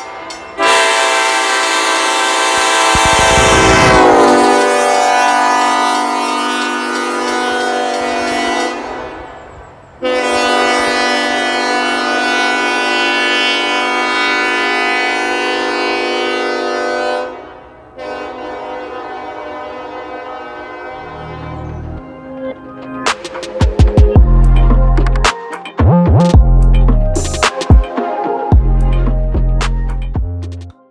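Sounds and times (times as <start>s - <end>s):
locomotive air horn blasts: 0.6s - 9.3s, 10.0s - 21.4s.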